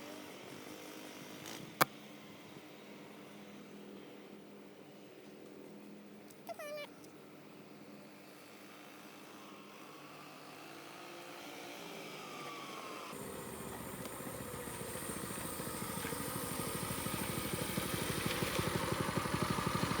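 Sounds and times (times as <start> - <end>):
mini bike engine running: 8.4 - 20.0.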